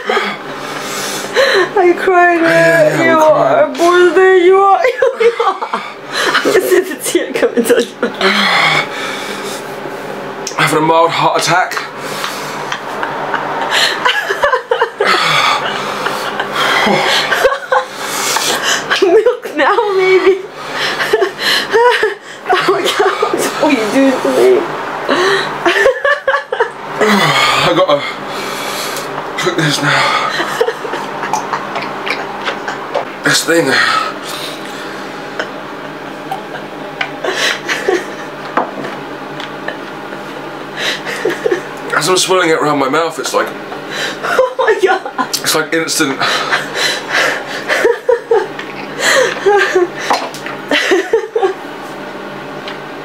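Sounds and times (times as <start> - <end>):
man chuckling: 0.0 - 0.5, 12.2 - 19.2, 20.2 - 23.7, 24.3 - 28.3, 29.4 - 39.0, 39.6 - 41.8, 44.0 - 51.6
man breathing hard and hissing: 0.0 - 1.8, 8.2 - 10.2, 12.0 - 12.7, 13.6 - 14.1, 15.0 - 18.9, 27.0 - 30.5, 33.6 - 35.3, 40.7 - 41.2, 43.9 - 44.3, 46.2 - 47.8
steady low hum: 0.0 - 53.0.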